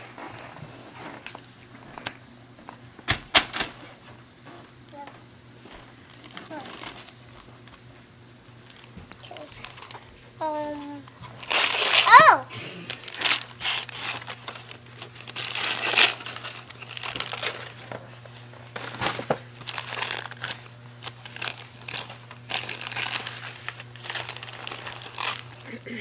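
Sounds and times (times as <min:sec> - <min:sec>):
steady low hum: 0:00.0 - 0:26.0
wrapping paper tearing and crinkling: 0:05.7 - 0:07.8, 0:08.6 - 0:25.9.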